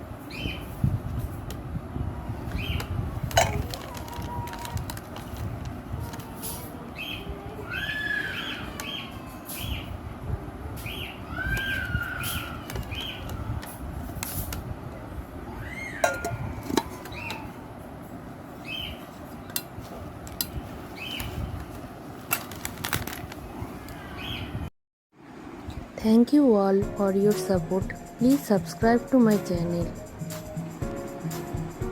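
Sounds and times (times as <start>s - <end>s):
birds whistling and chirping: 2.5s - 3.0s, 7.0s - 10.0s, 10.8s - 13.5s.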